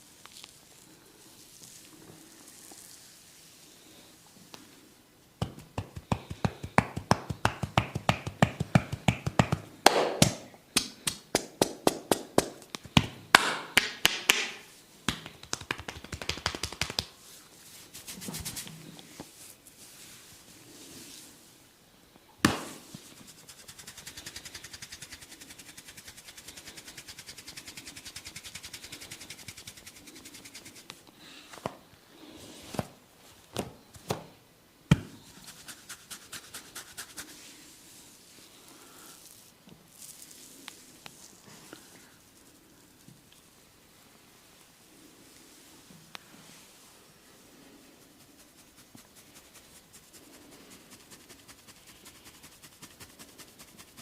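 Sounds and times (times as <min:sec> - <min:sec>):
hands slapping body: 0:05.4 - 0:17.2, 0:22.4 - 0:22.8
fast scratching strokes: 0:23.0 - 0:30.9, 0:35.3 - 0:37.7, 0:47.8 - 0:54.0.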